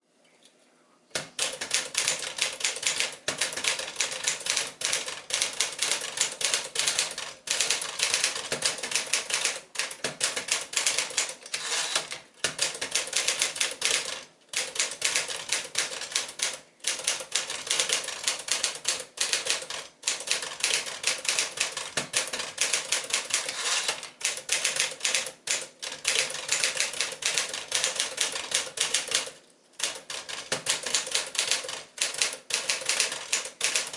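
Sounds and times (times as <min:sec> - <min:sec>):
manual typewriter key strikes: 0:01.2 - 0:33.9.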